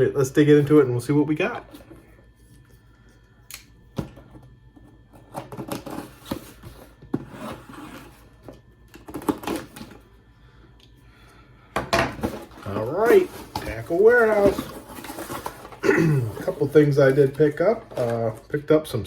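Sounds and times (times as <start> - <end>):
packaging rustling and crinkling: 12.1 - 18.6.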